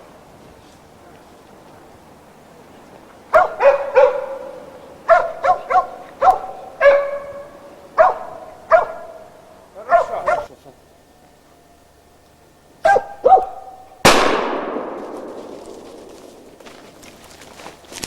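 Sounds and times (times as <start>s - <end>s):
dogs barking: 3.3s - 10.6s, 12.8s - 14.0s.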